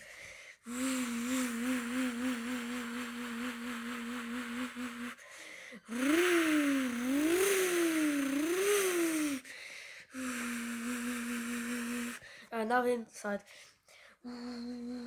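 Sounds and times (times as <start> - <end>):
person imitating engine with mouth: 0.7 - 9.4, 10.2 - 12.2, 14.3 - 15.0.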